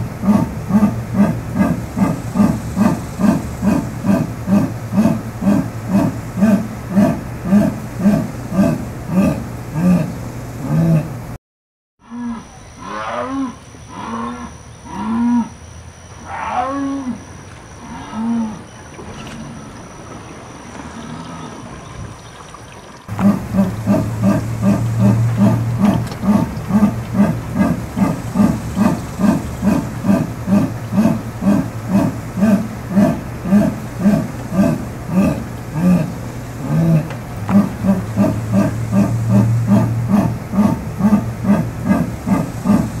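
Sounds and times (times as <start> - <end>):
jaguar low grunting call: 0.0 - 11.2, 12.0 - 15.6, 23.1 - 43.0
steady low drone: 0.0 - 11.4, 23.1 - 43.0.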